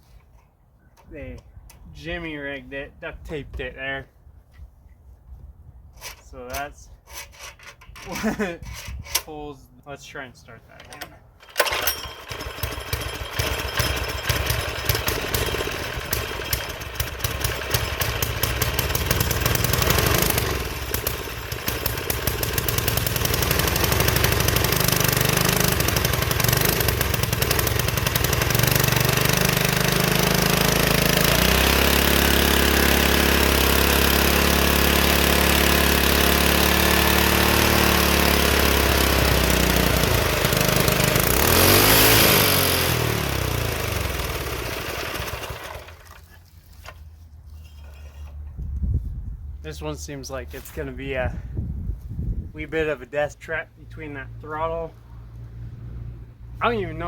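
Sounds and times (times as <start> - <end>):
small engine running: 11.4 - 47.0.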